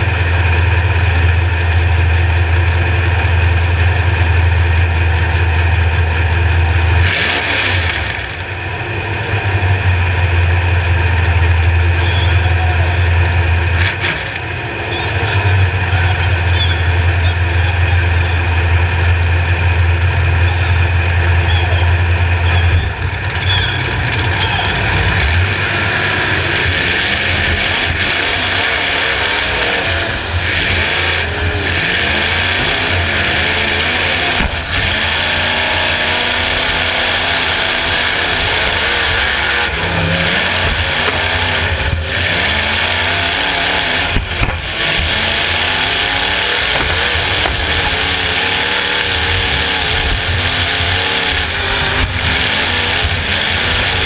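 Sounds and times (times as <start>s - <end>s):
car engine revving hard: 0.0s - 54.0s
car impact knocks: 44.2s - 44.7s.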